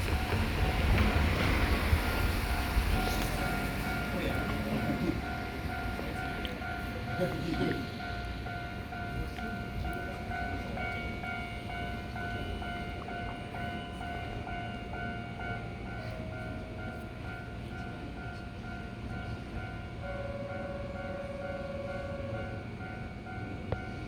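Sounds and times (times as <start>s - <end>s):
level crossing warning bell: 0.0s - 24.0s
trains rumbling past: 0.0s - 24.0s.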